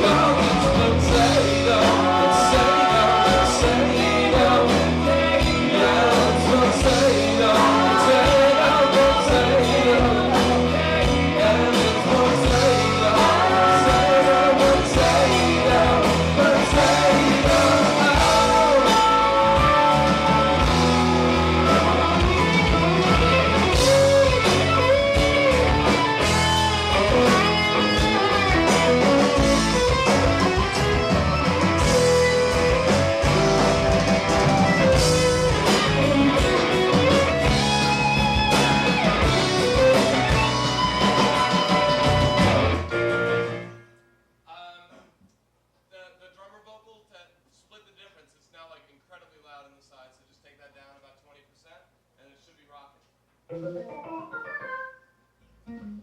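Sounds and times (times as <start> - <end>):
person singing: 0.0 - 24.8
electric guitar: 0.0 - 43.9, 53.5 - 56.0
live rock band playing: 0.0 - 43.9, 53.5 - 55.1, 55.7 - 56.0.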